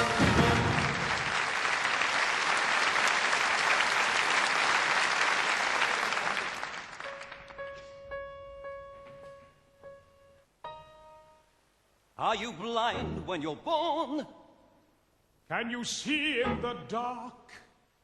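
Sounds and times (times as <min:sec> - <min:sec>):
audience applauding: 0:00.0 - 0:07.6.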